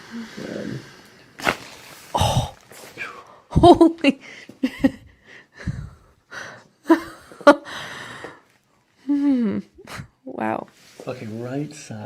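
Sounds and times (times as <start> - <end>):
person gasping and breathing hard: 2.1 - 6.7.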